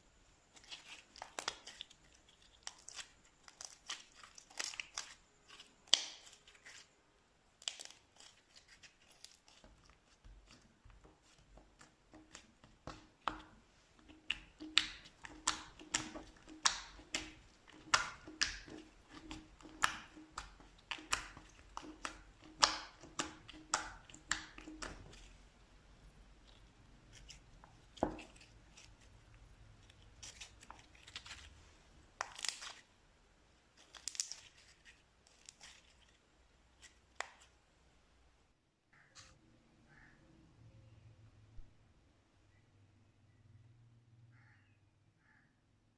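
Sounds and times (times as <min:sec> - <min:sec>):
slime squeezed with wet pops: 0:11.2 - 0:25.3.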